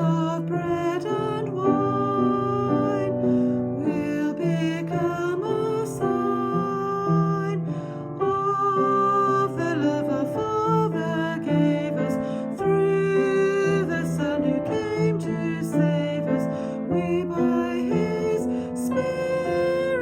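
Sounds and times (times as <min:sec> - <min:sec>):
slow hymn with piano: 0:00.0 - 0:20.0.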